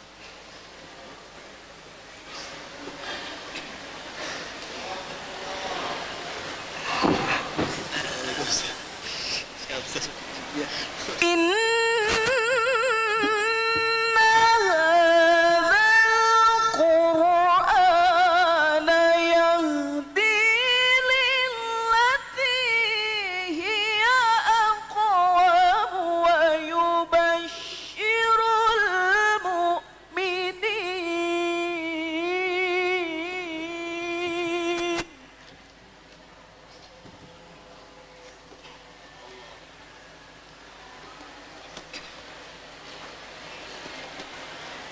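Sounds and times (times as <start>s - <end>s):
person reciting melodically: 10.6s - 35.2s.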